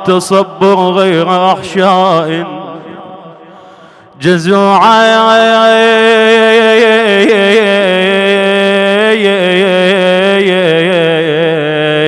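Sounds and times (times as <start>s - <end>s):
man chanting melismatic vowel: 0.0s - 3.2s.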